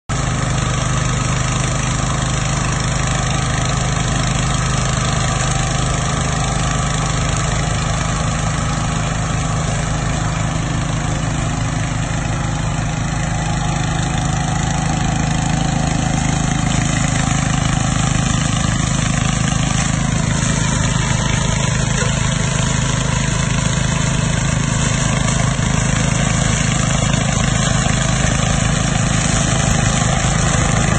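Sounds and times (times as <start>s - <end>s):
lawn mower engine running: 0.1s - 30.9s.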